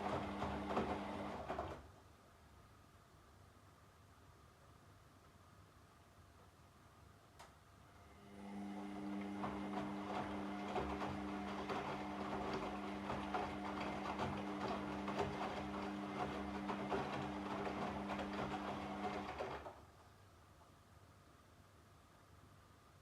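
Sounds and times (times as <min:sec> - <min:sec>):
washing machine motor humming: 0:00.0 - 0:01.8, 0:08.2 - 0:19.8.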